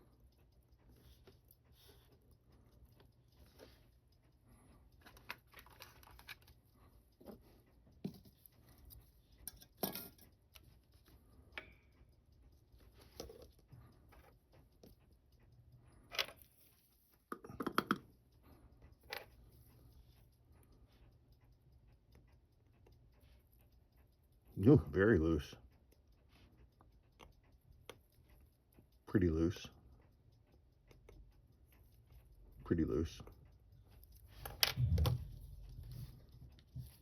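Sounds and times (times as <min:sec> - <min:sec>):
small tool clicks and taps: 0:04.9 - 0:12.1, 0:17.2 - 0:19.4.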